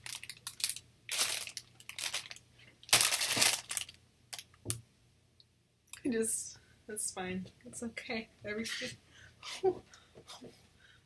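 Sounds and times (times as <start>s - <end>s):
plastic packaging crinkling: 0.0s - 4.5s.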